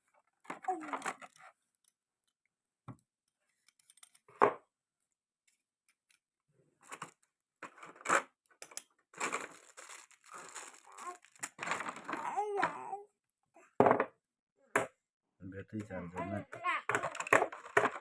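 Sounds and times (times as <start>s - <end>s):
packaging crinkling and tearing: 9.1s - 12.4s.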